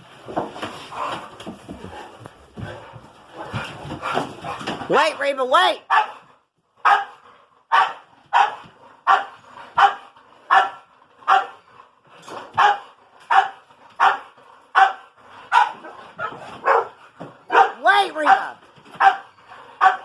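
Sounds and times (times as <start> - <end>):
dog barking sharply: 5.9 - 6.2, 6.8 - 11.6, 12.6 - 20.0.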